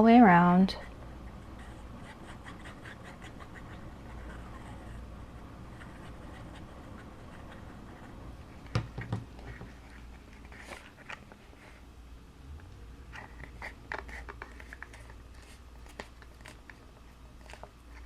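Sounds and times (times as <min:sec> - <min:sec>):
cardstock rustling and tapping: 0:08.6 - 0:11.4.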